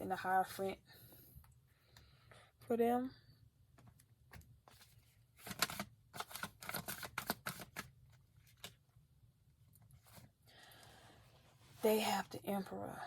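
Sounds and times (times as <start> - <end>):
cards being shuffled: 3.8 - 8.8.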